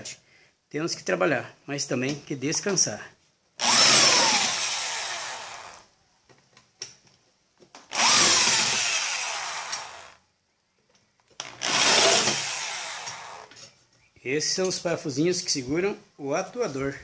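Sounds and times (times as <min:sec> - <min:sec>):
electric drill unscrewing: 0:07.8 - 0:10.2, 0:11.4 - 0:13.7.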